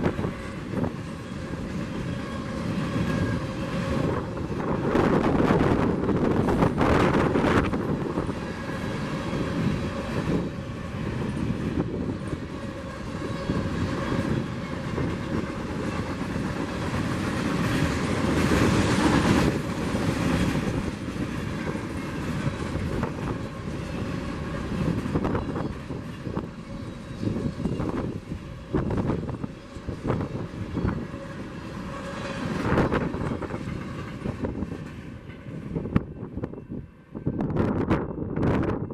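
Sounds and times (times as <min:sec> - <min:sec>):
wind on microphone: 0:02.6 - 0:31.4, 0:32.3 - 0:38.9
train wheels clattering over rail joints: 0:06.3 - 0:36.1.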